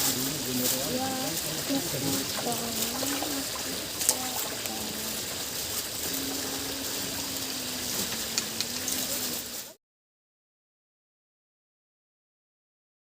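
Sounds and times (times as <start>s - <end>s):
faint hum: 0.0s - 9.8s
running water: 0.0s - 9.8s.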